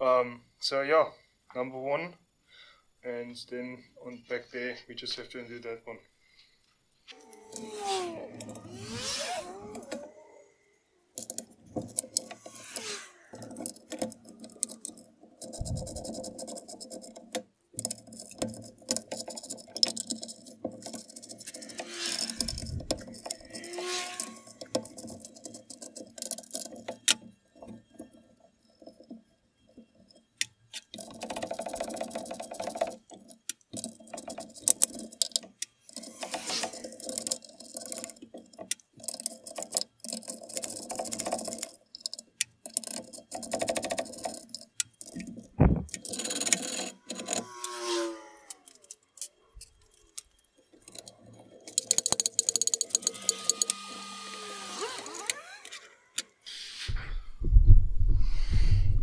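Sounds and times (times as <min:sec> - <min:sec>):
ratchet wrench clicking: 0:07.2 - 0:10.1, 0:11.2 - 0:27.3, 0:30.4 - 0:51.1, 0:51.7 - 0:56.3.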